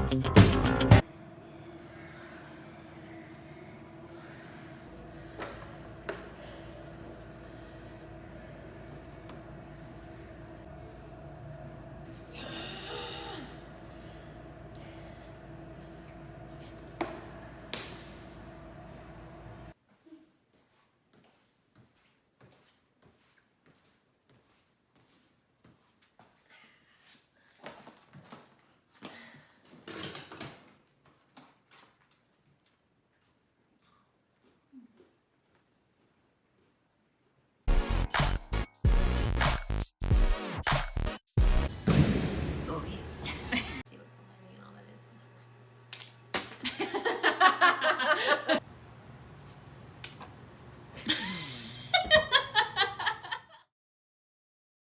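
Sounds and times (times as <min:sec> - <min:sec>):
person laughing: 0:43.2 - 0:43.9, 0:46.6 - 0:48.6, 0:51.0 - 0:53.7.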